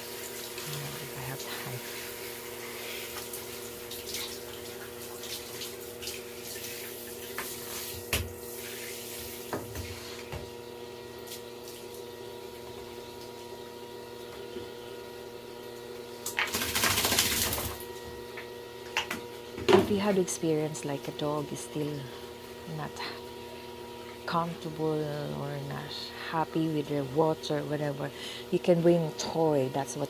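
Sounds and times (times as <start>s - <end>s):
running water hissing: 0.0s - 10.3s
steady hum: 0.0s - 30.0s.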